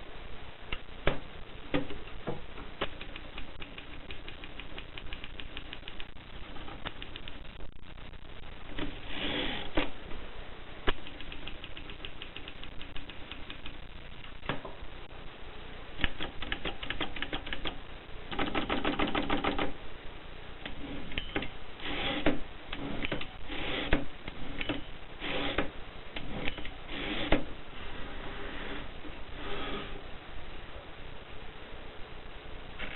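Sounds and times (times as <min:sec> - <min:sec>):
typewriter keys clicking: 0:02.8 - 0:07.4, 0:10.9 - 0:13.7, 0:16.0 - 0:19.7.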